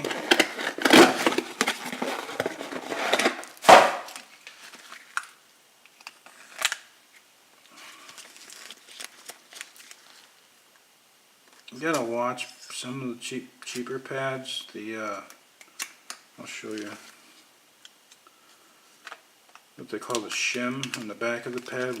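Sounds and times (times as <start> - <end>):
packaging rustling: 0.0 - 10.4, 18.9 - 22.0
sharp knock: 3.7 - 4.1.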